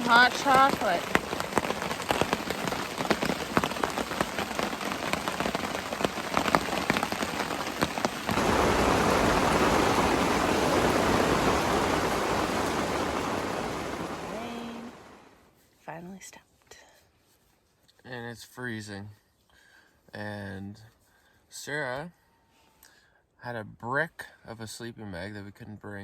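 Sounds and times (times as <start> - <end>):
heavy rain: 0.0 - 15.4.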